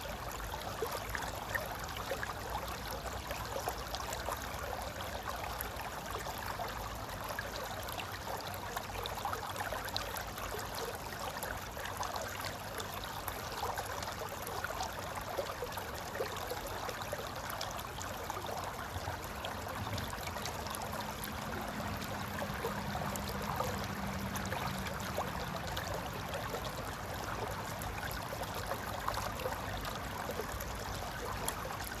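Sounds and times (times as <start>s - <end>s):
river flowing over rocks: 0.0s - 32.0s.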